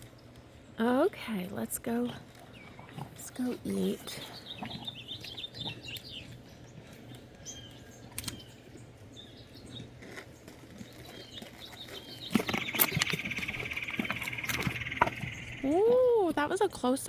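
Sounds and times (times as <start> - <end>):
faint bird chirps: 10.9 - 15.9.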